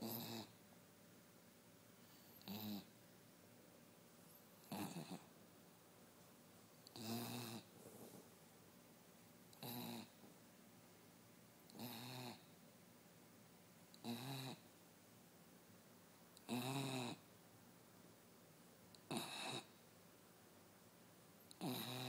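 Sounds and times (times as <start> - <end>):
dog snoring: 0.0 - 0.6, 2.1 - 2.9, 4.6 - 5.3, 6.9 - 8.2, 9.5 - 10.2, 11.7 - 12.5, 13.9 - 14.7, 16.4 - 17.2, 19.0 - 19.7, 21.5 - 22.0.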